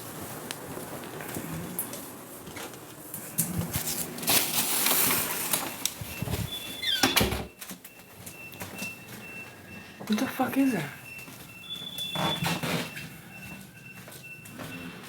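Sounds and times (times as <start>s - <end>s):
rustling and bumping handling noise: 0.0s - 6.7s
fire alarm tone: 3.2s - 15.0s.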